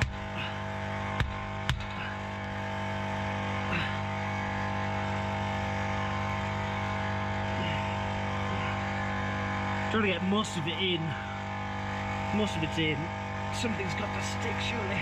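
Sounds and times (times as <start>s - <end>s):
tyre compressor droning: 0.0s - 15.0s.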